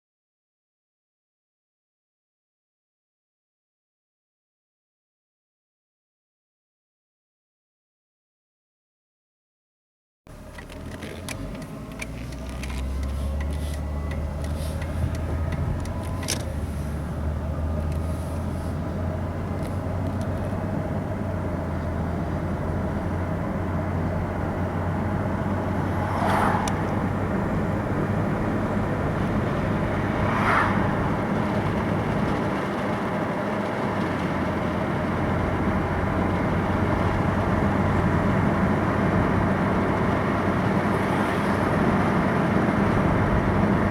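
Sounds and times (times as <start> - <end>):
car engine and road noise: 10.3 - 43.9.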